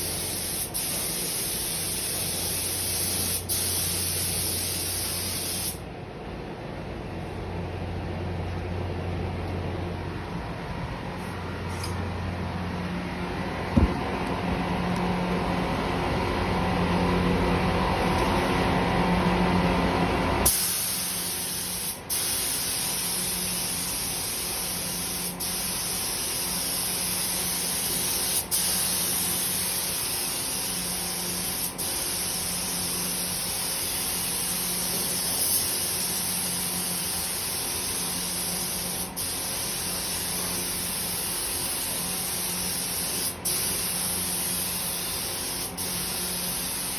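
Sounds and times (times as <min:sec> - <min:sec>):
paint spray gun hissing: 0:00.0 - 0:05.8, 0:20.4 - 0:46.9
low machine hum: 0:00.0 - 0:46.9.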